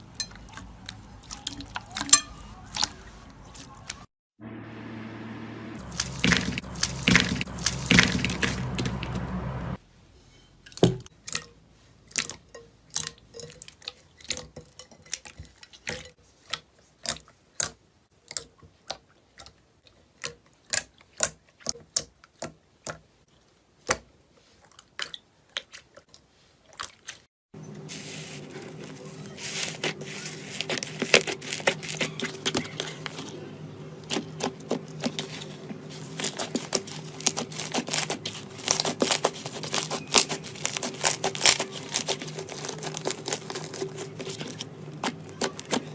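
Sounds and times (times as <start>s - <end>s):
steady hum: 4.4s - 9.8s.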